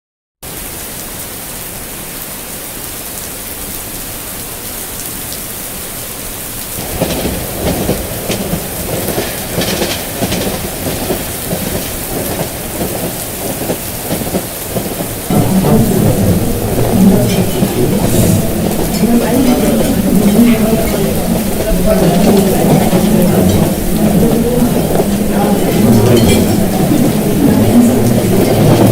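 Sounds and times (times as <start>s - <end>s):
rain hissing: 0.5s - 28.9s
thunder rumbling: 6.6s - 28.9s.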